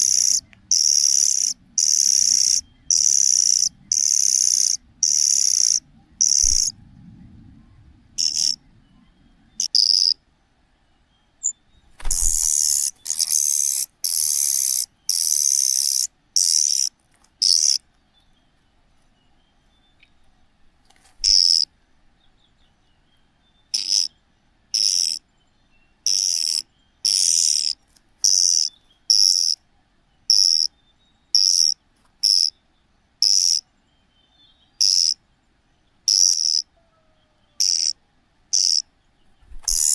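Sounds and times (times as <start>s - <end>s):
bird chick hoarse begging calls: 0.0s - 6.7s, 8.2s - 8.6s, 12.0s - 17.8s, 39.5s - 39.9s.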